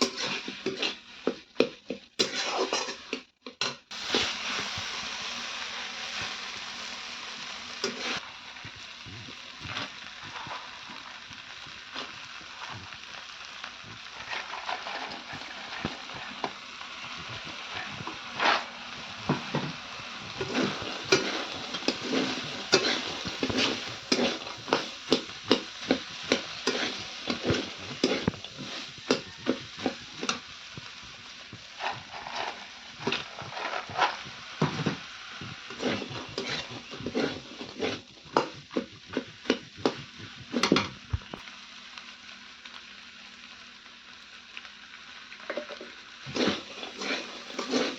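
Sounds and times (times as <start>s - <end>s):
spoon scraping and clicking on pan: 0.0s - 3.8s, 20.4s - 30.5s, 35.7s - 40.9s, 45.5s - 47.9s
food sizzling in a pan: 0.0s - 47.9s.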